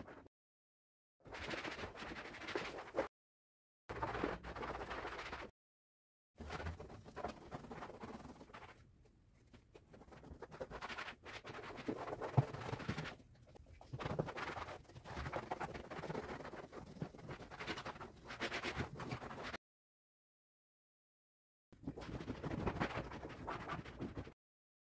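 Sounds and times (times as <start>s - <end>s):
hands scratching and rubbing: 6.4s - 19.6s.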